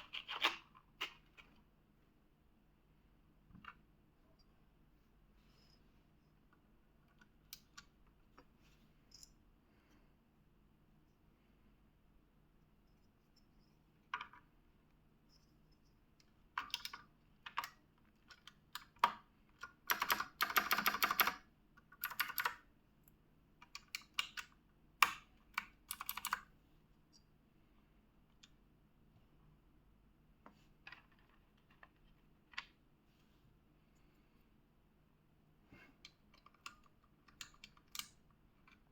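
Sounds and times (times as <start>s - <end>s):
mechanical keyboard keys clacking: 19.7s - 21.4s, 22.0s - 22.6s, 23.6s - 26.5s.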